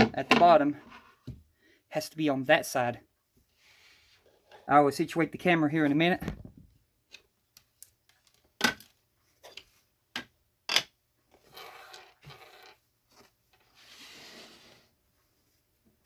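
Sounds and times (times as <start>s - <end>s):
rustling or sliding: 3.3s - 4.8s, 11.4s - 15.9s.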